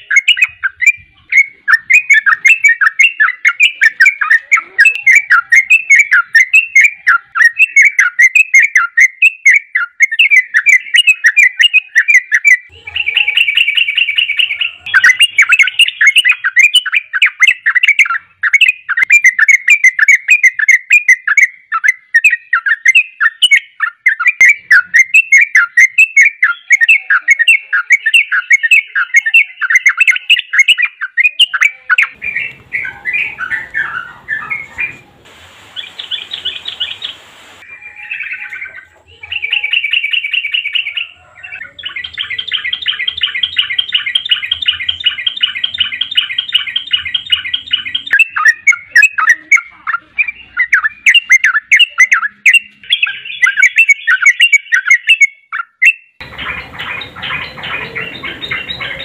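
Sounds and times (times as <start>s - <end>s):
bulbul singing bubbling chirps: 22.0s - 55.2s.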